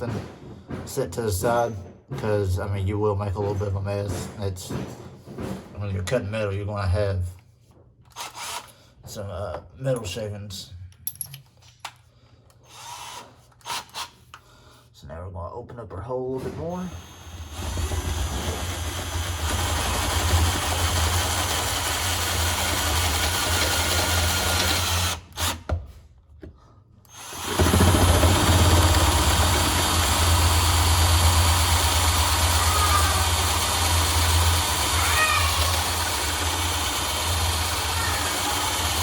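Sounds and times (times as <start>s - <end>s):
electric drill boring through metal: 16.9s - 25.6s, 27.1s - 39.0s.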